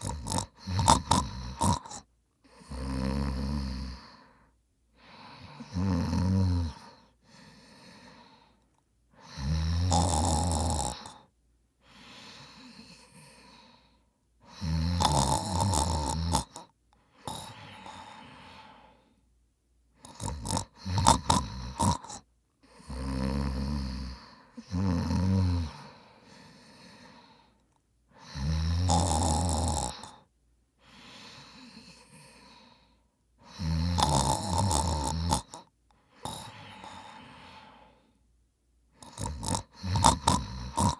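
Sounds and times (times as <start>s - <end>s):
man snoring: 0.0s - 4.3s, 5.2s - 8.4s, 9.2s - 11.3s, 14.5s - 18.9s, 20.0s - 27.4s, 28.2s - 30.3s, 33.4s - 37.9s, 39.0s - 40.9s
quiet breathing: 0.0s - 40.9s.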